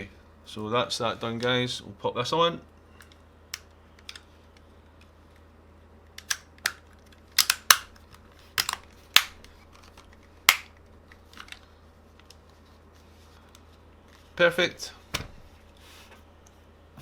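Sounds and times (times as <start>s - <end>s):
plastic parts clicking and snapping: 3.0s - 4.3s, 6.1s - 12.4s.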